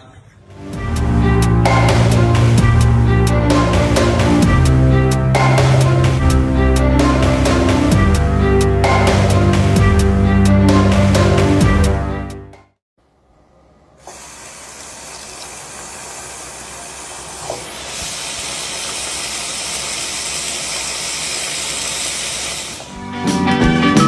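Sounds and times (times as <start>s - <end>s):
music: 0.5s - 12.8s, 22.9s - 24.0s
steady hiss: 13.9s - 22.9s.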